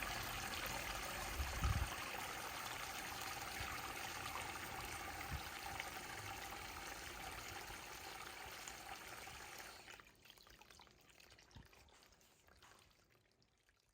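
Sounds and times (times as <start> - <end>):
water pouring and trickling: 0.0 - 13.9.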